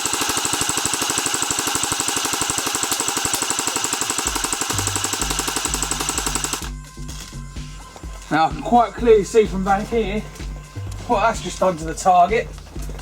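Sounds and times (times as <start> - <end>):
airsoft gun firing full auto: 0.0 - 6.7.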